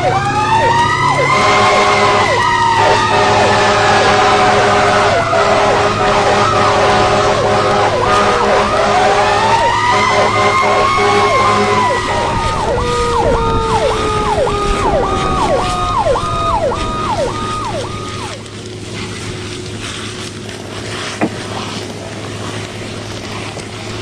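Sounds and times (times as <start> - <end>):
yelp siren: 0.0 - 18.5
steady low hum: 0.0 - 24.0
wailing siren: 0.0 - 24.0.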